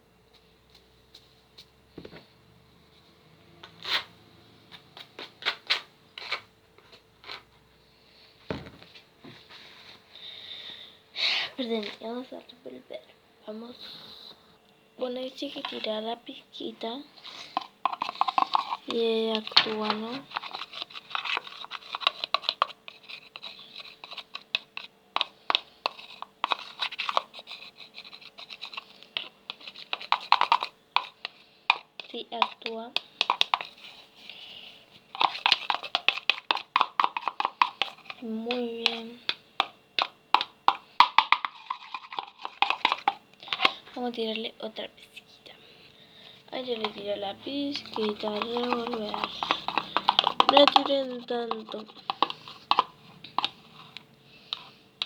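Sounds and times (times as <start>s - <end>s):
faint steady hum: 0.0s - 55.0s
utensils and containers clicking: 17.4s - 27.3s, 28.2s - 34.0s, 35.1s - 43.8s, 46.5s - 54.8s.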